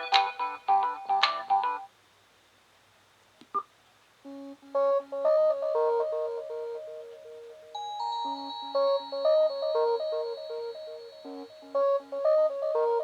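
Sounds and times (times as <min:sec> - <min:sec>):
electronic ringtone melody: 0:04.8 - 0:13.0.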